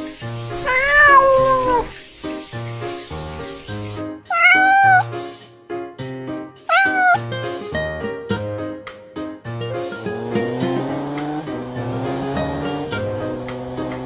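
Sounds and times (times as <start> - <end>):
cat meowing: 0.6 - 2.0, 4.3 - 5.2, 6.7 - 7.3.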